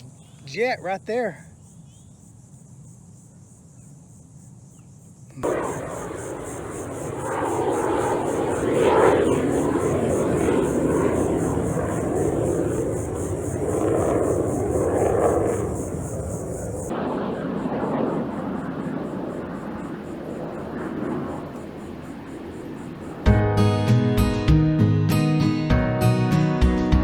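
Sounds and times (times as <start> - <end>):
jet engine roar: 5.4 - 23.3.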